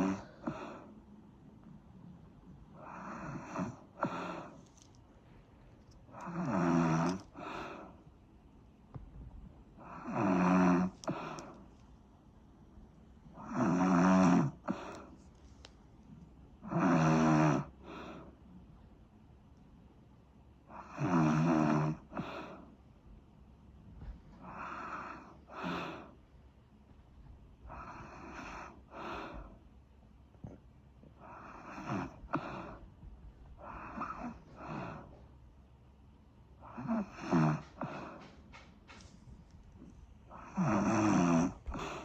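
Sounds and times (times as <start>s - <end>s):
person snoring: 0.0s - 0.9s, 2.8s - 4.6s, 6.1s - 8.0s, 9.8s - 11.6s, 13.3s - 15.2s, 16.6s - 18.3s, 20.7s - 22.6s, 31.2s - 32.8s, 33.6s - 35.1s, 36.6s - 38.2s, 40.3s - 42.0s.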